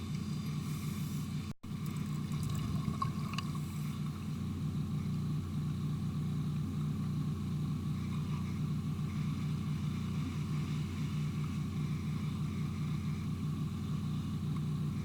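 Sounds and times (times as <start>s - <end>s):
low underwater rumble: 1.7s - 5.3s
faint ticks: 11.4s - 15.0s.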